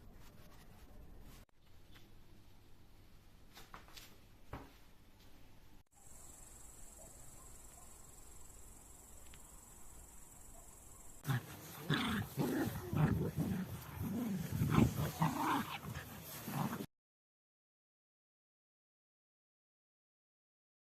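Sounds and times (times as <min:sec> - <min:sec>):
large animal low vocalizations: 0:11.3 - 0:16.9.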